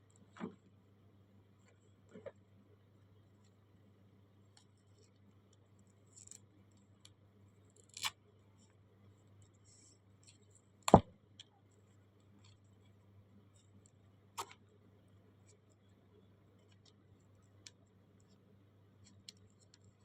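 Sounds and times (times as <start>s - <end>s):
faint steady hum: 0.0s - 20.0s
small clicks: 13.6s - 14.7s.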